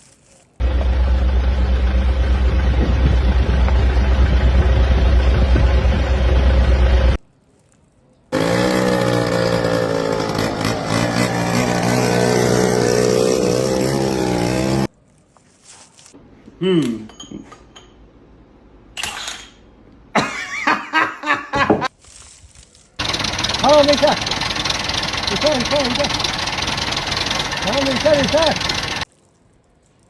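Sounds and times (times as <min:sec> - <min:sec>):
motor running loudly: 0:08.4 - 0:14.9, 0:23.0 - 0:29.0.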